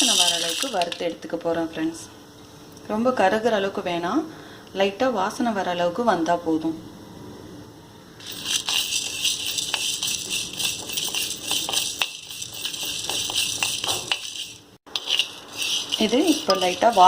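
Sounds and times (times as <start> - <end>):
dry spices rattling in clay pot: 0.0 - 1.2, 8.2 - 17.0.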